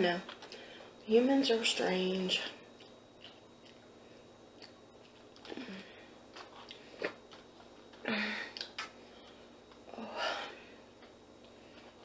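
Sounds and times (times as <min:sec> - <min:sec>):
soft chewing: 0:02.6 - 0:09.9.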